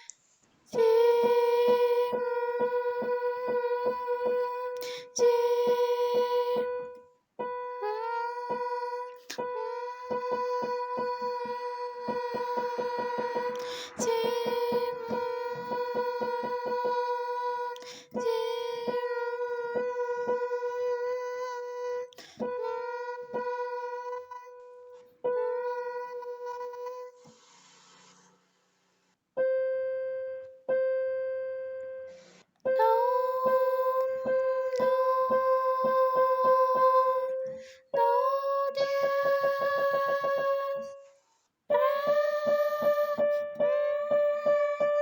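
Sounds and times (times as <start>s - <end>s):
woman singing sustained note: 0.8s - 27.3s, 32.7s - 41.0s, 41.7s - 45.0s.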